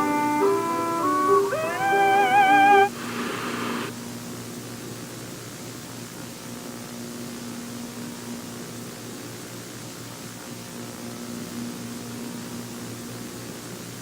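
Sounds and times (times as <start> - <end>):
static hiss: 0.0 - 3.9.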